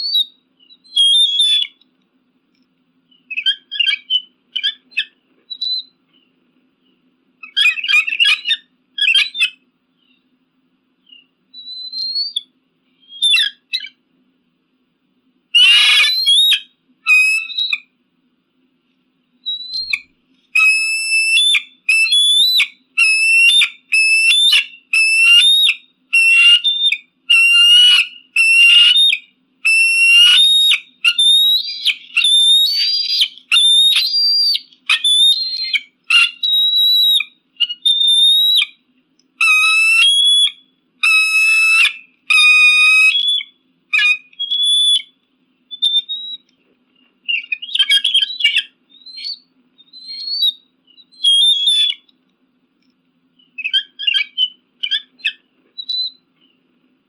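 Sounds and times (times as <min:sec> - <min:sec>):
eagle whistled calls: 0:00.0 - 0:01.8, 0:03.1 - 0:10.3, 0:11.0 - 0:14.0, 0:15.6 - 0:17.9, 0:19.4 - 0:38.8, 0:39.4 - 0:46.6, 0:47.2 - 0:52.1, 0:53.4 - 0:56.6
eagle piping notes: 0:27.3 - 0:38.7, 0:39.4 - 0:45.2.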